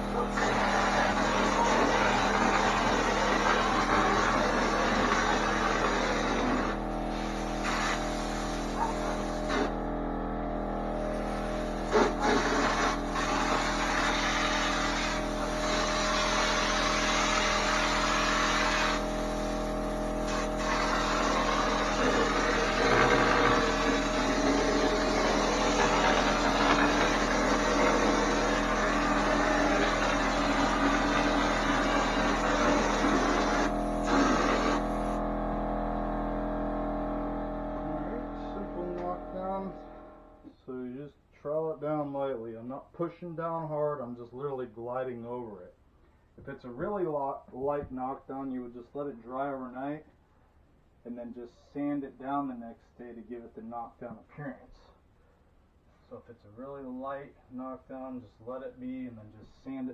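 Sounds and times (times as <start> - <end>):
spray gun hissing: 0.0 - 9.7, 11.1 - 35.1
air compressor humming: 0.0 - 40.6.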